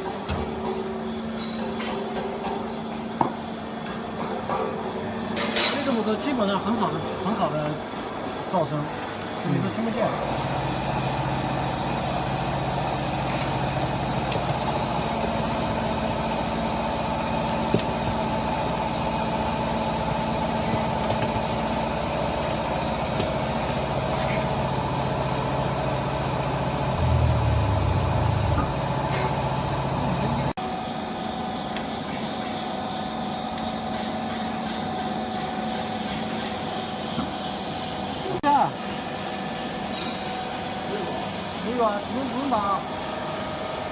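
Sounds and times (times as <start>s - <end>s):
electric motor and pump humming: 9.2s - 43.9s.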